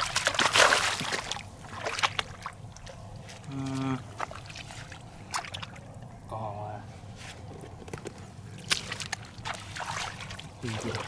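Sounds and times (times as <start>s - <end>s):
water splashing and trickling: 0.0s - 11.0s
person humming: 3.5s - 4.0s.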